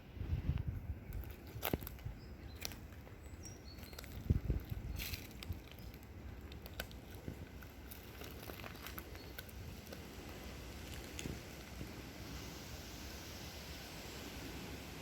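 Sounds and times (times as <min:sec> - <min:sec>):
twigs crackling and snapping: 0:01.1 - 0:03.1, 0:03.7 - 0:12.0
footsteps on forest floor: 0:03.7 - 0:12.0.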